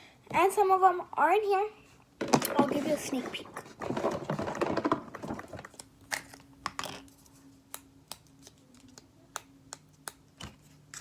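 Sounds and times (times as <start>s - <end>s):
faint steady hum: 0.0s - 11.0s
plastic containers clicking: 2.2s - 5.8s.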